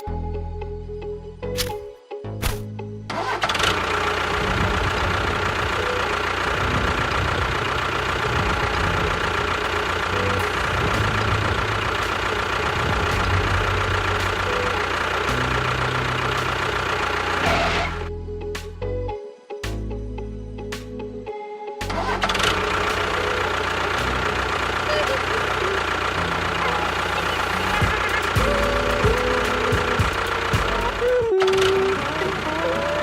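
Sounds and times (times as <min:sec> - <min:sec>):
motor running with high whine: 0:03.4 - 0:18.1, 0:22.0 - 0:33.0.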